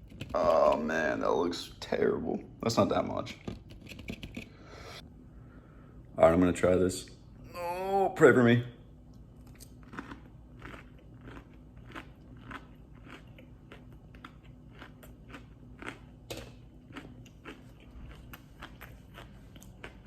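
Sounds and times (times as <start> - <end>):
faint low hum: 0.0 - 20.0
person chewing crunchy food: 9.4 - 20.0.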